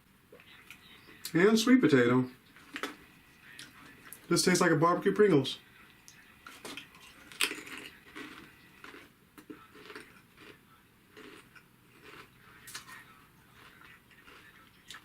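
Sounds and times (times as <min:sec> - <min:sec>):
chewing crunchy crisps: 0:02.5 - 0:04.3, 0:06.0 - 0:15.0.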